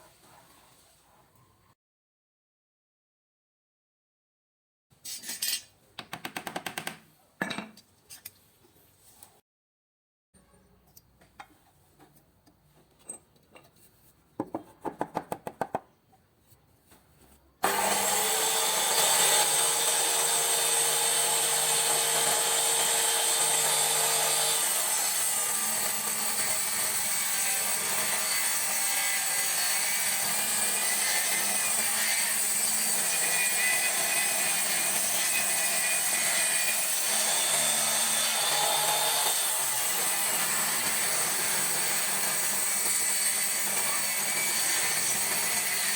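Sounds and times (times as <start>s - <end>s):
circular saw cutting wood: 17.6s - 45.9s.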